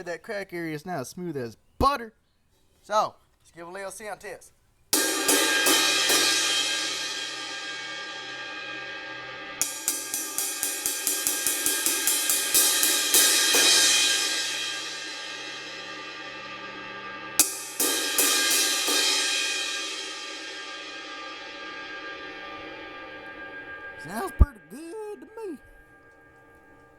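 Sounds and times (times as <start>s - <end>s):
crash cymbal struck and ringing: 5.0s - 24.7s, 25.4s - 26.9s.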